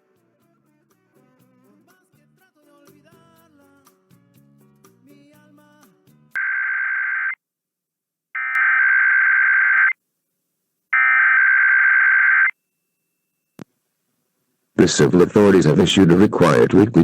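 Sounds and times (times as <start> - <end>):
digital data tones: 8.4 - 9.9.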